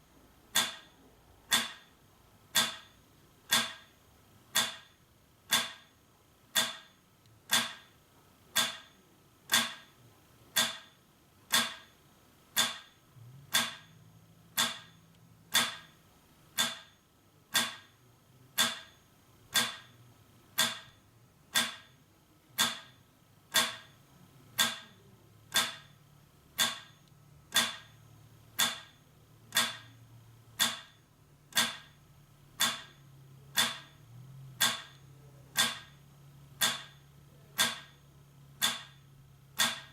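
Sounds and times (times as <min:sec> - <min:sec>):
metronome ticking: 0:00.5 - 0:01.9, 0:02.5 - 0:03.9, 0:04.5 - 0:04.9, 0:05.5 - 0:05.9, 0:06.5 - 0:06.9, 0:07.5 - 0:07.9, 0:08.5 - 0:09.9, 0:10.5 - 0:11.9, 0:12.5 - 0:16.0, 0:16.6 - 0:17.9, 0:18.6 - 0:20.0, 0:20.6 - 0:22.0, 0:22.6 - 0:28.0, 0:28.6 - 0:30.0, 0:30.6 - 0:32.0, 0:32.6 - 0:34.0, 0:34.6 - 0:39.0, 0:39.6 - 0:39.9.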